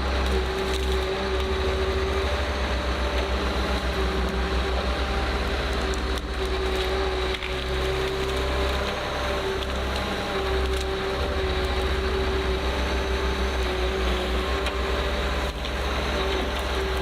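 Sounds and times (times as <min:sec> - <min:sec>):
heavy machine engine running: 0:00.0 - 0:17.0
wood cracking and splintering: 0:00.0 - 0:17.0.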